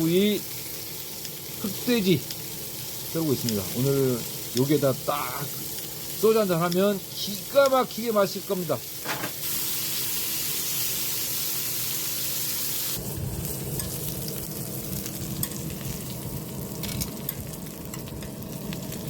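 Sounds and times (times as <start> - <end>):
roasting pork sizzling: 0.0 - 19.0
low rumble with crackles: 13.0 - 19.0.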